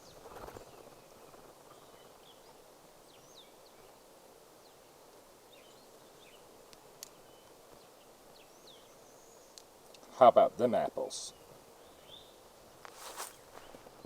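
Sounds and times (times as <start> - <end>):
distant birds chirping: 11.0 - 14.0.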